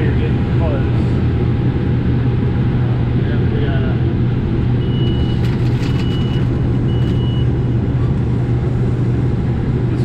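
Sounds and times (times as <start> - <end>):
combine harvester running: 0.0 - 10.0
high beeps from monitor: 4.8 - 5.4, 6.0 - 7.5.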